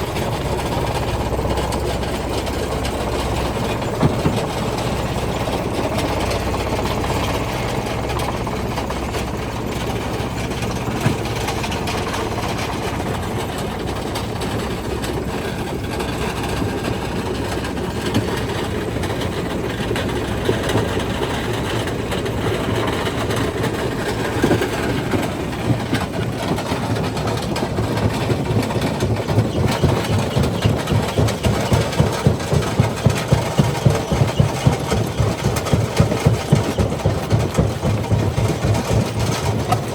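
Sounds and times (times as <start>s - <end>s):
jaw crusher grinding rock: 16.0s - 39.9s.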